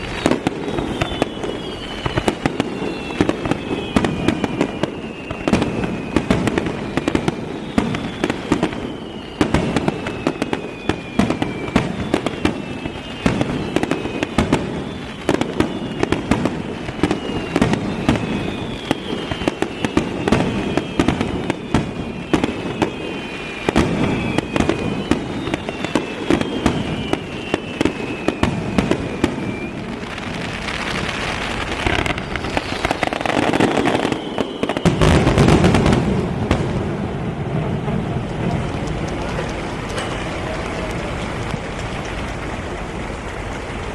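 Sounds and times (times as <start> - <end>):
firework bangs and crackles: 0.0 - 43.9
firework whistles: 0.0 - 43.9.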